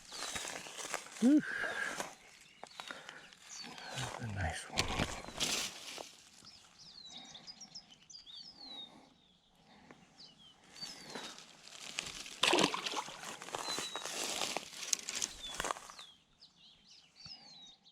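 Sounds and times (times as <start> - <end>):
small birds chirping: 0.0 - 17.9
rustling and clicking handling noise: 14.4 - 15.8.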